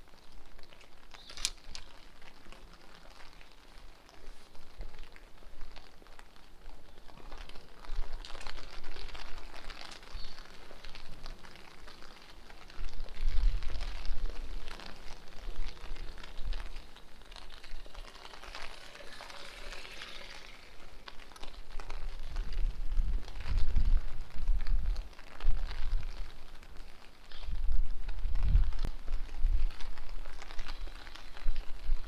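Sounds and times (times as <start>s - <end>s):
steady rain on street: 0.0s - 32.0s
wind buffeting microphone: 12.8s - 26.6s, 27.3s - 32.0s.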